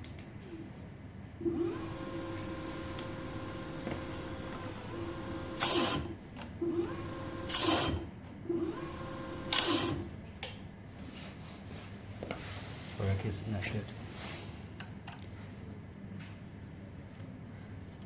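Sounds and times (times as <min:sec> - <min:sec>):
electric scooter motor whine: 0:01.4 - 0:10.0
harsh braking noise: 0:01.4 - 0:10.0.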